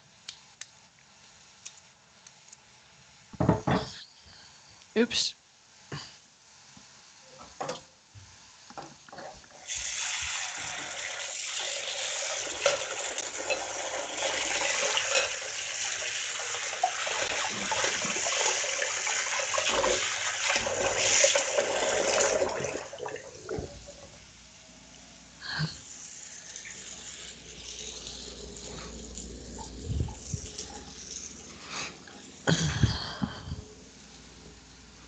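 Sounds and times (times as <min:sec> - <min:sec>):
dishes knocking: 0:03.4 - 0:04.0.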